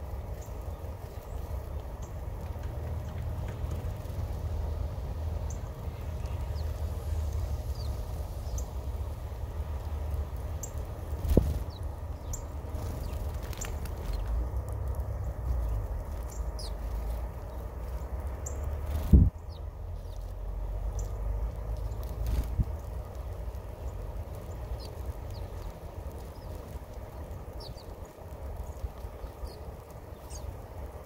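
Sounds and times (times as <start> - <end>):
small birds chirping: 0.0 - 31.0.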